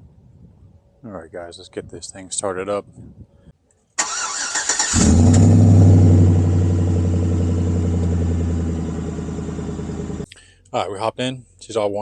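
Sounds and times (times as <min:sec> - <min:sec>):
starter motor cranking: 0:04.0 - 0:05.4
car engine starting and idling: 0:04.0 - 0:10.3.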